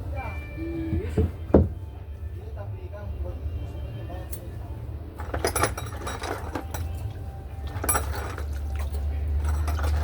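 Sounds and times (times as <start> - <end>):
metal parts clinking: 5.2 - 7.0, 7.7 - 8.7, 9.3 - 10.0.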